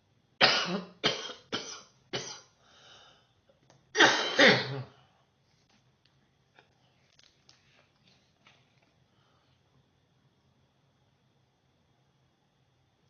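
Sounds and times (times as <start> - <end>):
person coughing: 0.4 - 2.5, 4.0 - 5.0.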